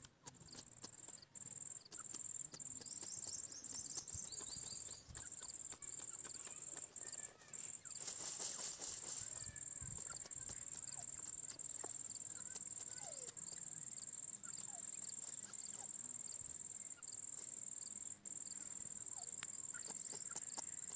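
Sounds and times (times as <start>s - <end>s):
cricket trilling: 0.2s - 20.9s
brief rustle: 6.4s - 10.4s.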